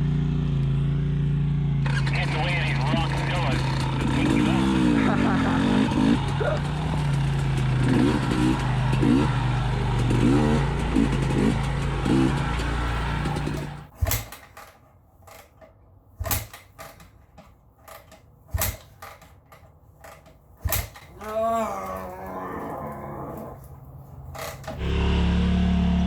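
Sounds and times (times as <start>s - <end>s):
dirt bike engine running: 0.0s - 14.6s, 23.3s - 26.0s
sharp knocks or clicks: 12.6s - 21.4s.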